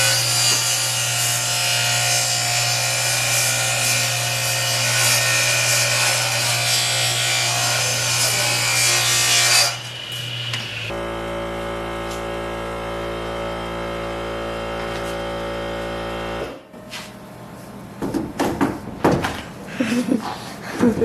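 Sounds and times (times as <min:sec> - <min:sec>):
power saw cutting panelling: 0:00.0 - 0:16.6.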